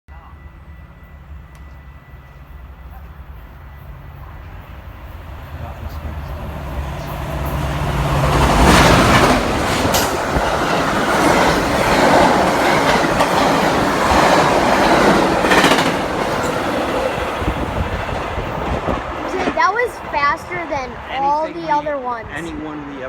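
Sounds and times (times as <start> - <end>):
train cars rushing past: 0.1 - 23.0
train engine hum: 0.1 - 23.0
wheels clacking over rail joints: 5.9 - 21.2.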